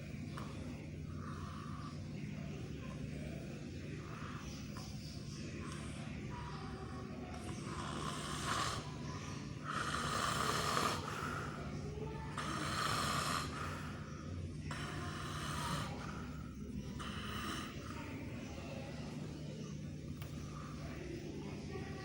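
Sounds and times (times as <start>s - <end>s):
low steady hum: 0.0s - 22.0s
baby snoring: 7.4s - 11.6s, 12.3s - 14.0s, 14.7s - 16.4s, 17.0s - 17.9s.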